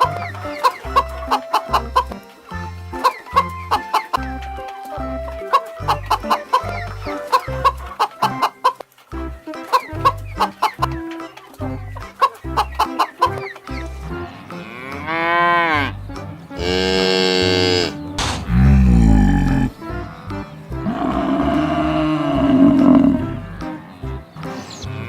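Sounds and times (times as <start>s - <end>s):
music with steady beat: 0.0s - 24.6s
chicken clucking: 0.0s - 24.7s
cattle mooing: 14.1s - 25.0s.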